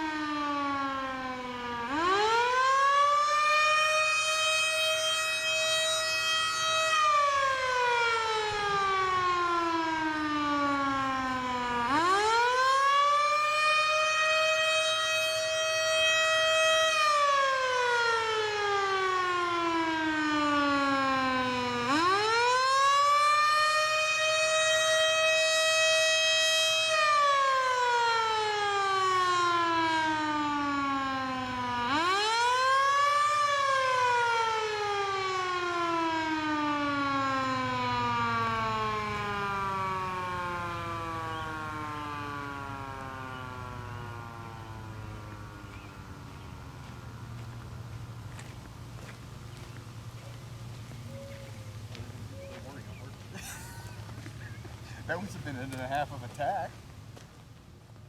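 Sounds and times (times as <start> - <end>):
warning siren wailing: 0.0 - 56.6.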